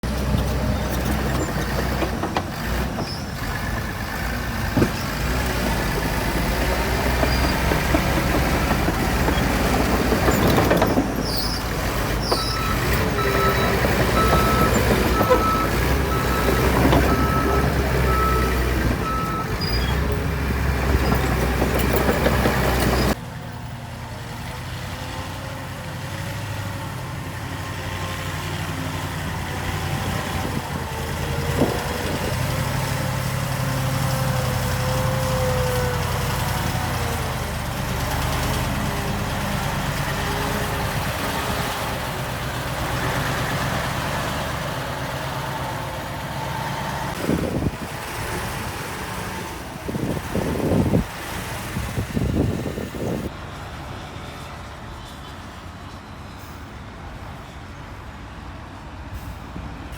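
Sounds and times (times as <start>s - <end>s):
heavy diesel engine rumble: 0.0s - 59.9s.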